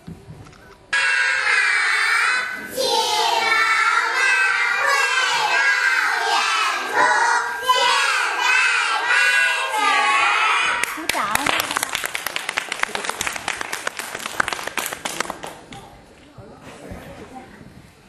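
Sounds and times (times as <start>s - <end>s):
children singing together: 1.0s - 10.8s.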